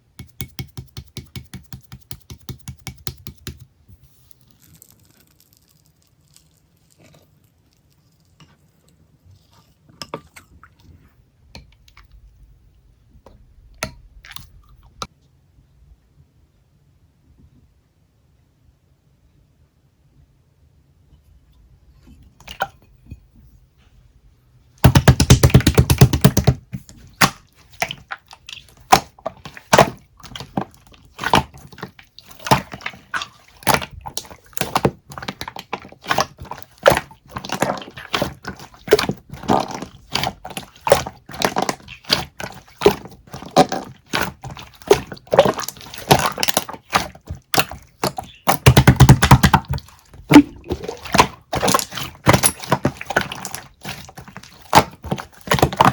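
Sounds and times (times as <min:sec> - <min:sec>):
objects knocking and thunking: 0:24.8 - 0:55.9.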